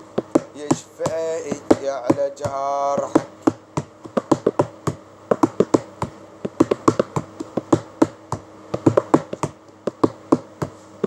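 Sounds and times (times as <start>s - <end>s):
faint steady hum: 0.0s - 11.0s
hand-drum taps: 0.2s - 10.8s
person singing folk song: 0.4s - 3.4s.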